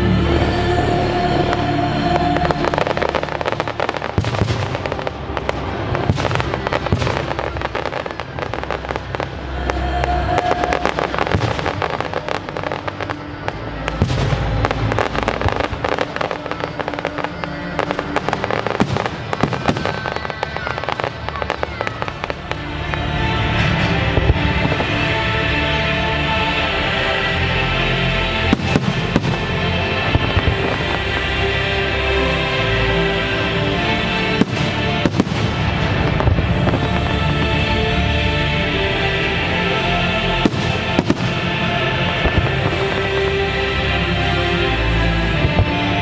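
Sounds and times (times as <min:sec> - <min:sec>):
music soundtrack: 0:00.0 - 0:46.0
fireworks bangs and crackles: 0:01.3 - 0:25.7, 0:28.4 - 0:46.0.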